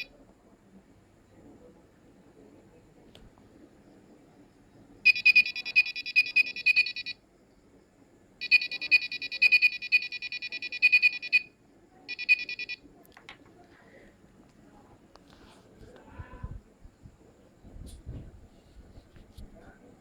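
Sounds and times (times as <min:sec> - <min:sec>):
high rapidly pulsing alarm beep: 0:05.1 - 0:07.2, 0:08.4 - 0:11.5, 0:12.1 - 0:12.8.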